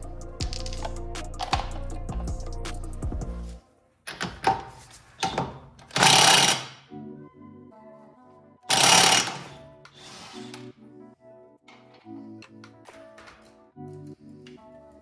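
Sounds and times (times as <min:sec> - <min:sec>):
background music: 0:00.0 - 0:15.0
air impact wrench bursts: 0:06.0 - 0:06.8, 0:08.7 - 0:10.6.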